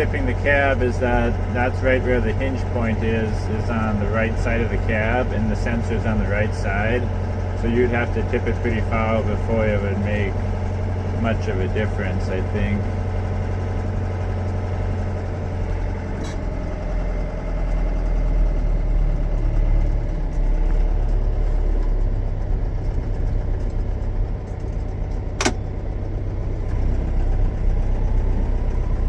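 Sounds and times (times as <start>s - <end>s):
tractor diesel engine running: 0.0s - 29.0s
sharp click: 25.4s - 25.6s.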